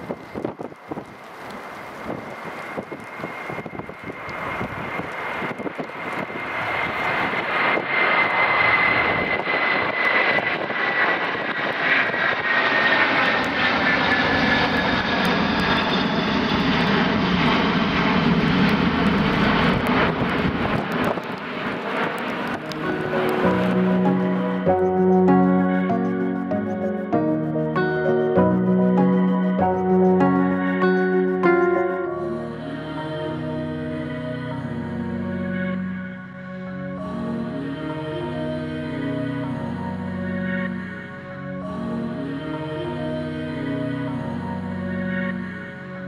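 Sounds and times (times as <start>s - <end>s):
deep rumble of jet: 0.0s - 46.0s
jet engines at take-off power: 0.0s - 46.0s.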